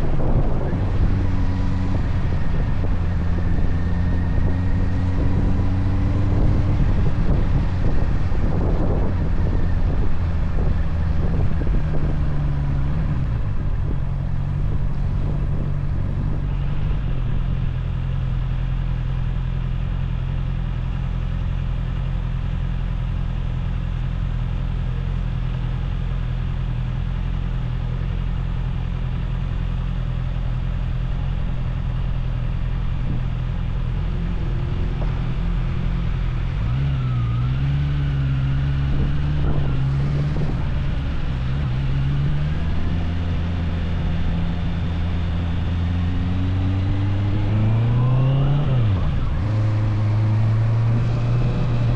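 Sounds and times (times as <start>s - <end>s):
motorcycle engine running: 0.0s - 51.9s
road rumble: 0.0s - 51.9s.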